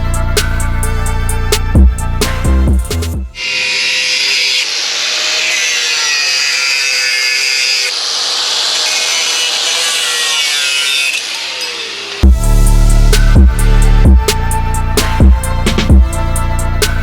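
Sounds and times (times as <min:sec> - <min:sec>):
power tool whining on metal: 0:03.4 - 0:12.3.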